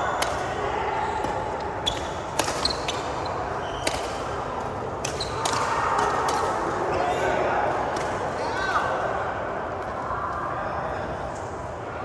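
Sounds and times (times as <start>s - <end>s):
racket hitting shuttlecock: 1.2s - 3.1s
shoes squeaking on court floor: 1.8s - 4.2s.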